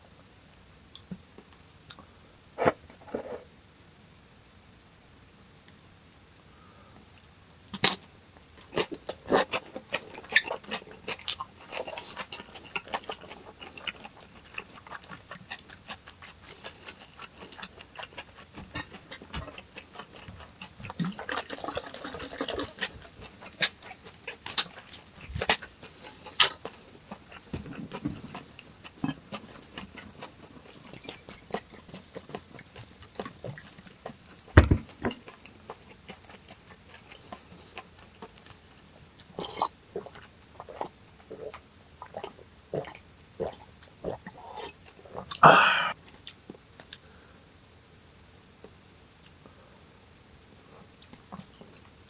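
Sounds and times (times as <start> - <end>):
chewing and wet mouth smacks: 7.7 - 34.5, 51.0 - 52.0.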